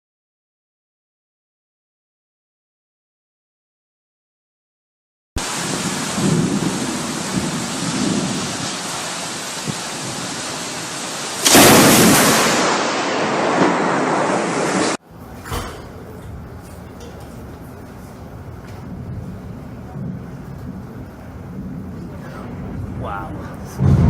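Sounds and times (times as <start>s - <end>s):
heavy rain: 5.4s - 15.0s, 15.8s - 24.0s
loud thunderclap: 5.4s - 15.0s, 18.8s - 24.0s
wind noise: 5.4s - 24.0s.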